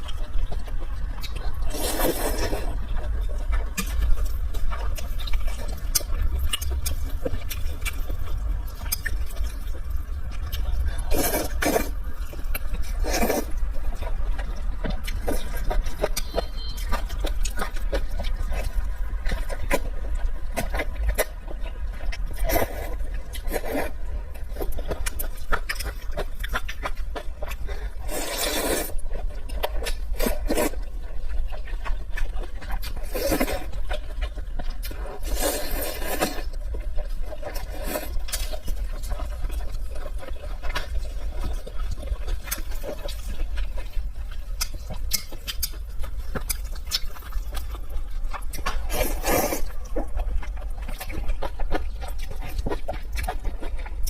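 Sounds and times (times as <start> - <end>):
wet chewing: 0.0 - 54.0.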